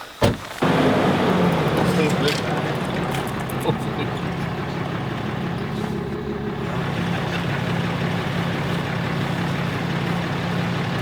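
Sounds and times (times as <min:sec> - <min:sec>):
road and wind noise: 0:00.2 - 0:11.0
vehicle engine humming: 0:00.6 - 0:11.0.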